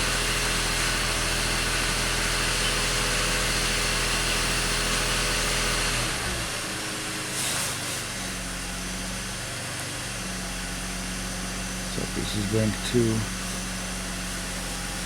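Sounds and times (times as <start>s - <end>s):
car engine revving and idling: 8.7s - 15.0s.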